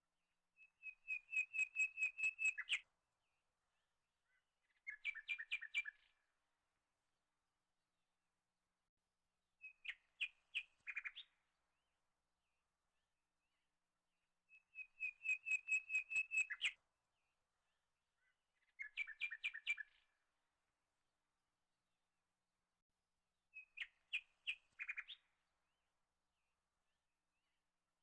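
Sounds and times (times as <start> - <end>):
bird chirping: 0.6 - 2.8, 4.6 - 6.2, 9.6 - 11.4, 14.5 - 16.8, 18.2 - 20.2, 23.6 - 25.4.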